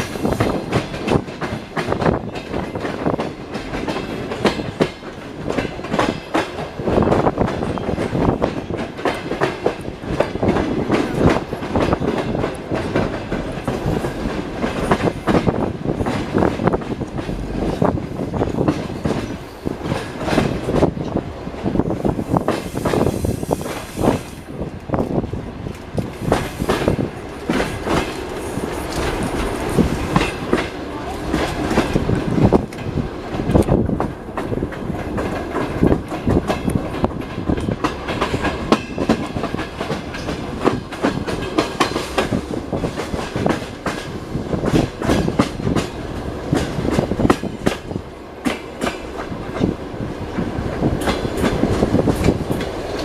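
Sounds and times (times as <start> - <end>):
train wheels clacking over rail joints: 0.0 - 24.4, 25.0 - 53.0
train rumble: 0.0 - 53.0.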